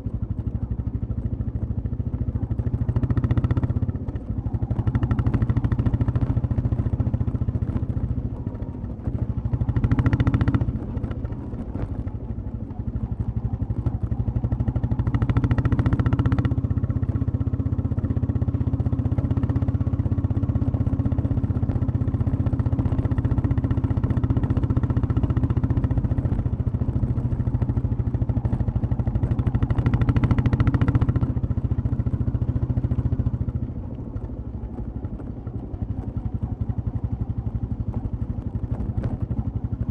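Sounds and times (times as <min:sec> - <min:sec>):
motorcycle exhaust thumping: 0:00.3 - 0:39.9.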